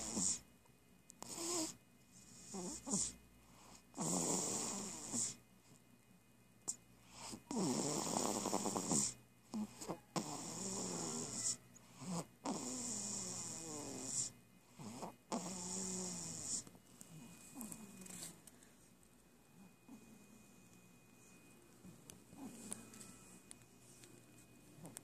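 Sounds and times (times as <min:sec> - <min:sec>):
person snoring: 0:07.2 - 0:16.6.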